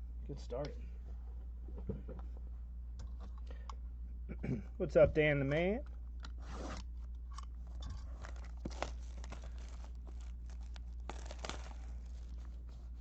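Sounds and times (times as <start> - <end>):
packaging tearing and crinkling: 7.9 - 13.0.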